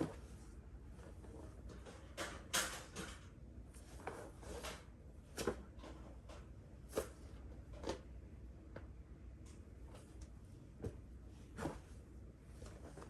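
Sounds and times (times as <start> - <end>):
low room hum: 0.0 - 13.0
clothing rustling: 10.8 - 13.0.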